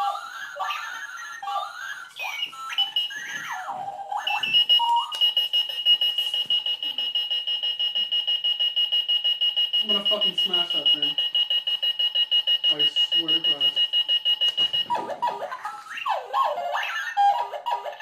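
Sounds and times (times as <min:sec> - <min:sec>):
warbling electronic chirps: 0:00.0 - 0:05.2
rapid high-pitched beeping: 0:00.0 - 0:17.5.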